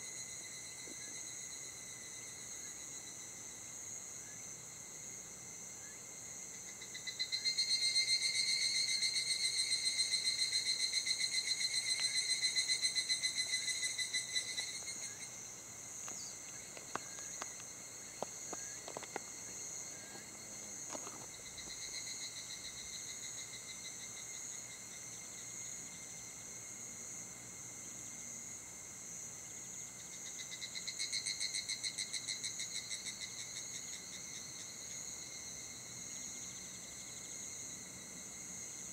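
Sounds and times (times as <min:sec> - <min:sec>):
rapidly pulsing insect call: 0:00.0 - 0:38.9
insect high trill: 0:06.8 - 0:26.3.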